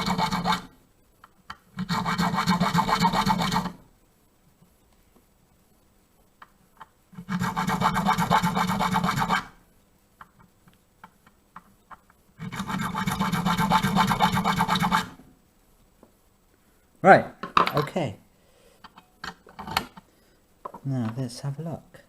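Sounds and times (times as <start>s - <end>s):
file scraping metal: 0.0s - 0.7s, 1.8s - 3.8s, 7.2s - 9.5s, 12.4s - 15.2s.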